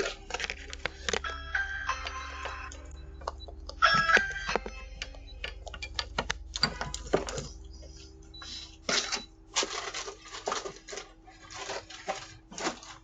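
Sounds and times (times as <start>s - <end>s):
steady hum: 0.0s - 13.0s
scraping and rustling: 8.8s - 13.0s.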